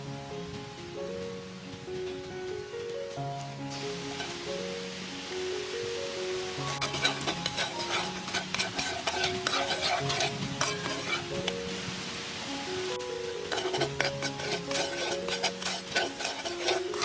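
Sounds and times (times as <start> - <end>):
background music: 0.0 - 17.0
snails sizzling in a pan: 3.7 - 17.0
utensil scraping against a pan: 4.2 - 4.4, 6.6 - 11.6, 13.4 - 17.0.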